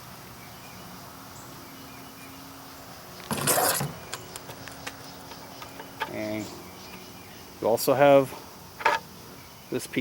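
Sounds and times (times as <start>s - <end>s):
loud handling noise: 3.2s - 6.3s.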